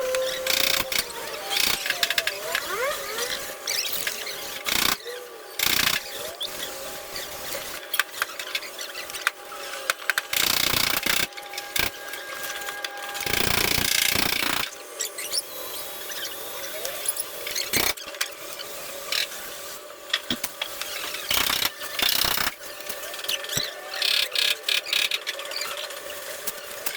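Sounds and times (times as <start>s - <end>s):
squeaking clicking tool on metal: 0.0s - 5.0s.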